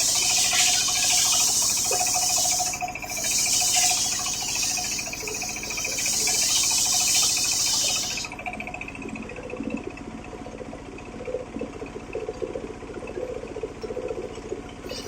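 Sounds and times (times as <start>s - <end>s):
circular saw blade cutting wood: 0.0s - 8.4s
machine humming: 0.0s - 15.0s.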